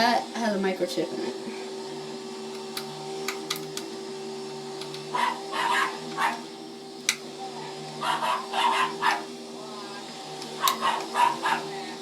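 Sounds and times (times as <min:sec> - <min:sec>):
steady motor hum: 0:00.0 - 0:12.0
dog barking: 0:05.1 - 0:06.5, 0:08.0 - 0:09.3, 0:10.6 - 0:11.8.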